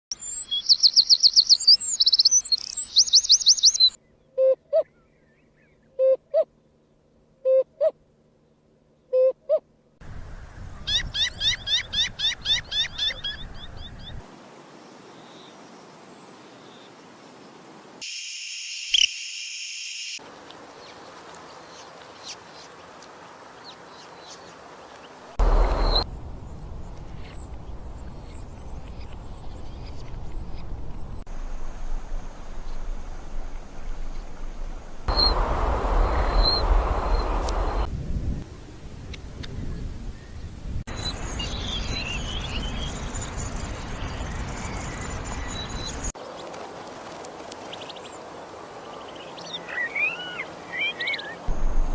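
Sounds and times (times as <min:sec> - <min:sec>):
birds chirping: 0:00.1 - 0:06.0, 0:23.6 - 0:31.3, 0:32.7 - 0:37.9, 0:39.6 - 0:46.4.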